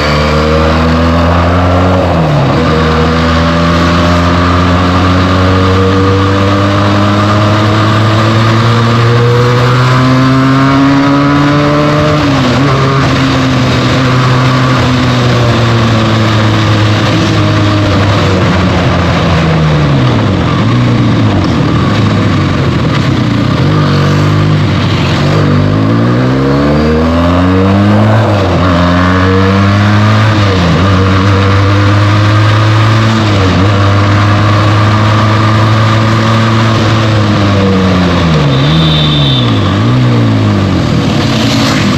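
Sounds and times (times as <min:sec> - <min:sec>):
motorcycle engine accelerating: 0:00.0 - 0:41.9.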